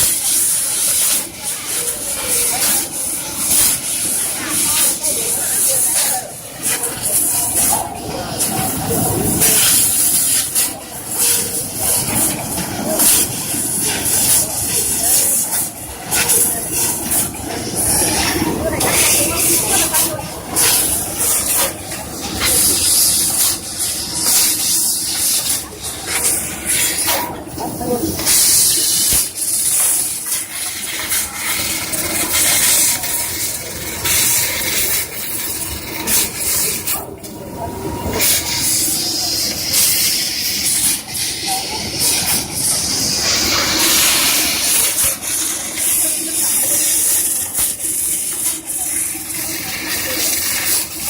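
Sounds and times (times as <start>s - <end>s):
laser cutter gas hiss: 0.0s - 51.0s.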